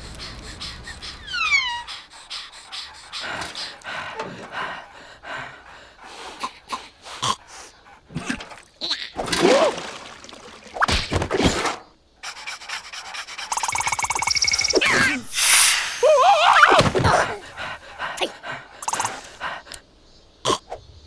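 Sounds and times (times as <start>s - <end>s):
cartoon character panting and grunts: 0.0s - 8.2s, 12.4s - 19.8s
falling whistle glide: 0.9s - 2.1s
loud cry: 14.8s - 18.4s.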